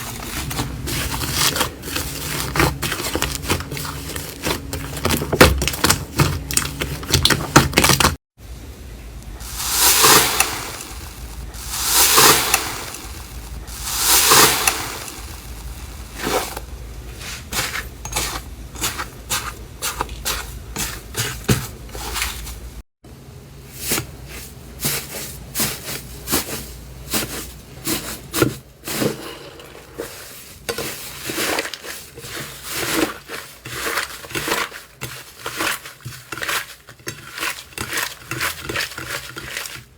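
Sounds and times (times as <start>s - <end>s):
slime squishing: 0.0s - 8.2s, 9.4s - 22.5s, 30.7s - 39.9s.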